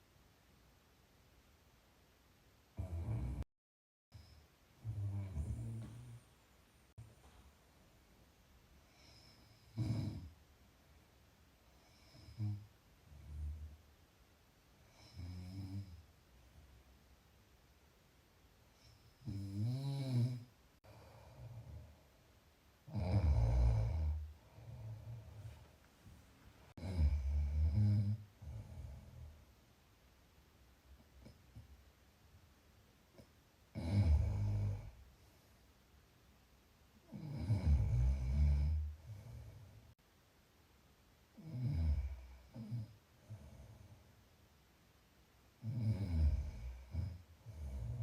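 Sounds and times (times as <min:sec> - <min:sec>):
low rumbling snore: 0:02.8 - 0:03.4, 0:04.8 - 0:06.2, 0:45.6 - 0:48.0
person snoring: 0:02.8 - 0:03.4, 0:04.2 - 0:06.2, 0:08.9 - 0:10.3, 0:18.8 - 0:21.9, 0:22.9 - 0:25.4, 0:26.8 - 0:29.3, 0:33.7 - 0:35.0, 0:37.1 - 0:39.7, 0:41.4 - 0:43.9, 0:45.6 - 0:48.0
quiet breath: 0:04.1 - 0:14.0, 0:14.7 - 0:16.2, 0:18.6 - 0:29.7, 0:33.1 - 0:35.9, 0:37.0 - 0:40.0, 0:41.3 - 0:44.6, 0:45.3 - 0:48.0.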